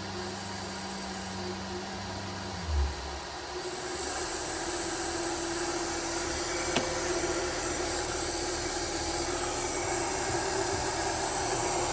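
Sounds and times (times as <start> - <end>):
electric motor hum: 0.0 - 11.9.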